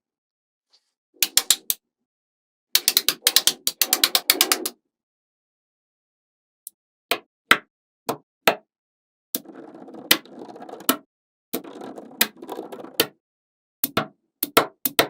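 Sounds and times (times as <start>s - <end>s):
magnetic balls clicking together: 2.8s - 4.7s.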